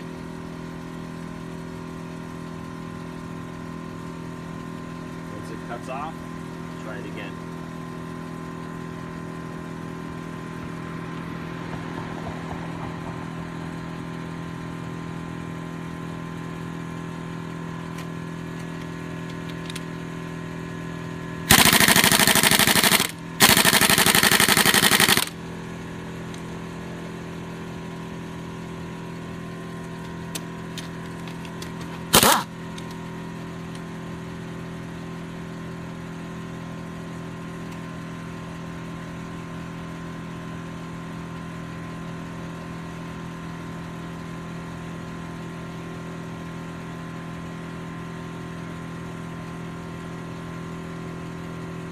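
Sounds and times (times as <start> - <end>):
air compressor humming: 13.3 - 34.2
pneumatic impact wrench hammering: 17.9 - 20.0, 21.4 - 26.6, 29.9 - 33.0.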